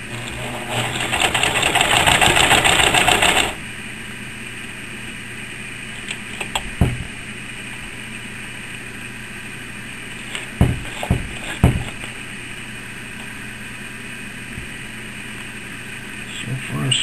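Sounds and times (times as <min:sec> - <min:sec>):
steady low hum: 0:00.0 - 0:17.0
knocks and low thumps: 0:06.7 - 0:07.1, 0:10.6 - 0:12.0.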